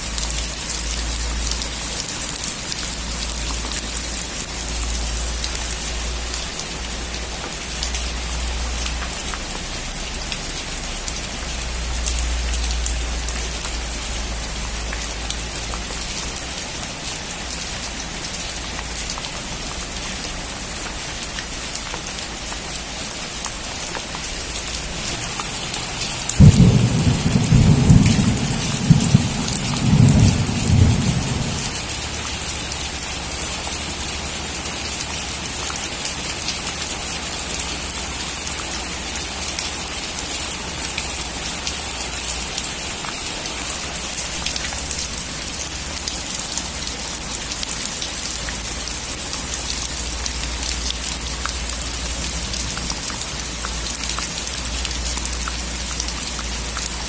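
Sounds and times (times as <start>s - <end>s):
heavy rain on a metal roof: 0.0s - 57.0s
thunderclap rumbling: 26.2s - 31.9s.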